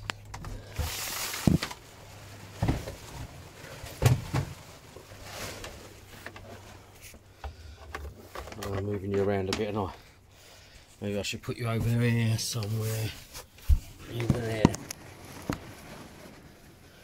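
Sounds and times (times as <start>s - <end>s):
rustling: 0.0s - 10.8s, 11.7s - 17.0s
knocks and bumps: 3.9s - 4.7s.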